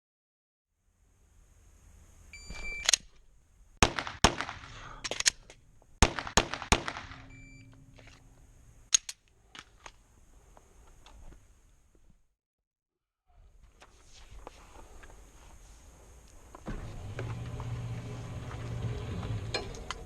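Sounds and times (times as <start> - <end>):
pistol shots with echo: 3.8 - 4.9, 6.0 - 7.6.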